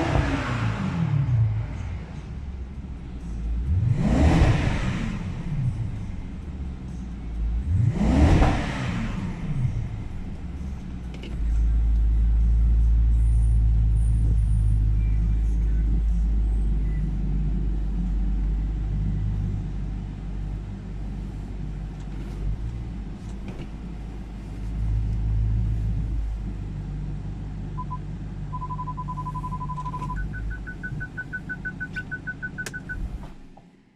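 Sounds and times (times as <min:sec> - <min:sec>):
car engine deep rumble: 0:00.0 - 0:33.9
electronic car beeping: 0:27.7 - 0:33.3.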